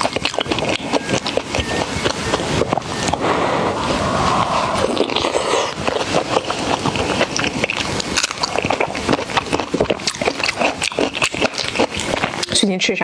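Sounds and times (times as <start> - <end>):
person chewing with crunches: 0.0 - 3.2, 5.2 - 12.7
hissy rushing noise: 2.6 - 7.1.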